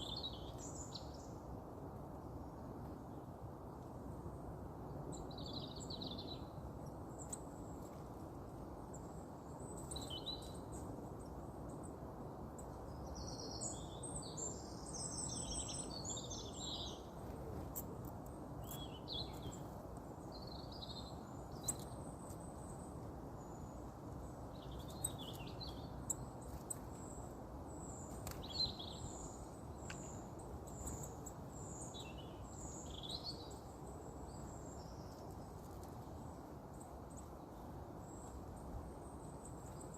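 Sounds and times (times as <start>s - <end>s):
birds singing and chirping: 9.6s - 10.9s, 12.6s - 17.9s, 18.5s - 19.7s, 24.3s - 35.4s.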